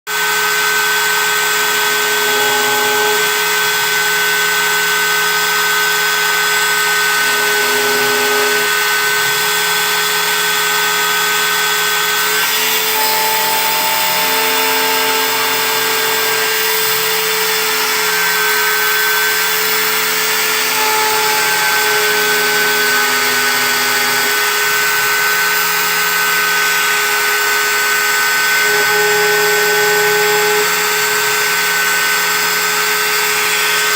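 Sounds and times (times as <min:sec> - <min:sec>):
engraving machine motor whine: 0:00.1 - 0:33.9
machine cutting noise: 0:00.2 - 0:33.9.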